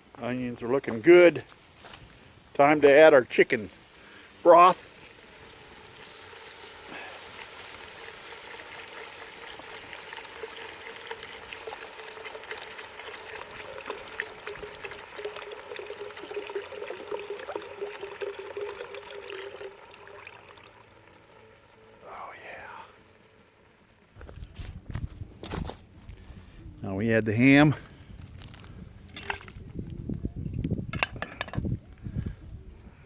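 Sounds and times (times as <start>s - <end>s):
broth pouring into a pot: 3.5s - 23.3s.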